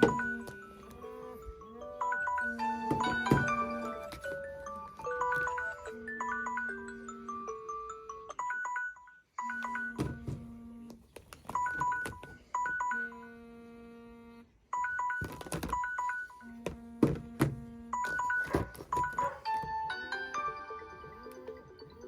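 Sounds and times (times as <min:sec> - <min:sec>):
dull thuds: 0:00.0 - 0:00.8, 0:02.6 - 0:05.8, 0:09.8 - 0:11.0
electronic ringtone chimes: 0:01.8 - 0:10.3, 0:11.6 - 0:13.3, 0:14.7 - 0:16.5.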